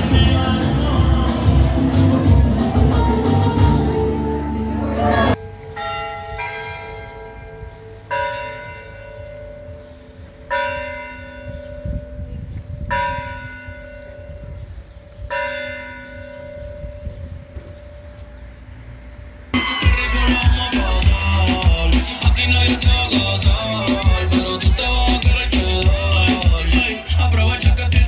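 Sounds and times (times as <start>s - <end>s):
large bell tolling: 19.6s - 21.9s.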